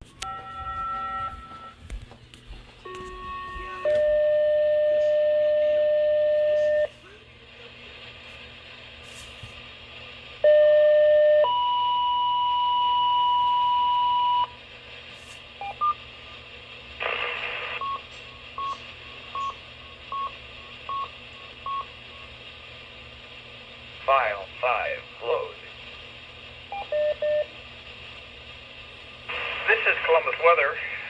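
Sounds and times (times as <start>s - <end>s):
electronic tones from radio: 0.2s - 1.8s, 2.9s - 6.9s, 17.0s - 19.6s
burst of static: 17.0s - 17.8s, 29.2s - 31.0s.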